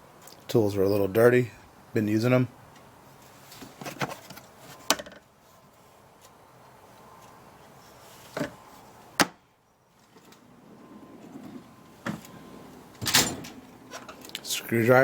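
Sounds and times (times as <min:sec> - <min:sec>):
metal drawers sliding: 0:10.4 - 0:14.2.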